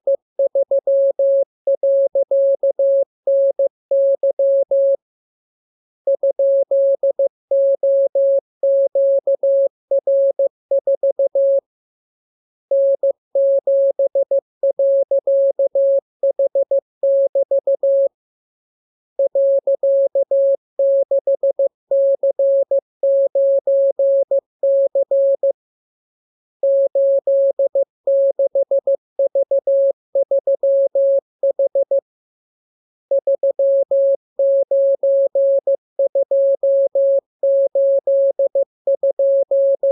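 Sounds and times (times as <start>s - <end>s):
morse code beeps: 0.1s - 5.0s, 6.1s - 11.6s, 12.7s - 18.1s, 19.2s - 25.5s, 26.6s - 32.0s, 33.1s - 39.9s.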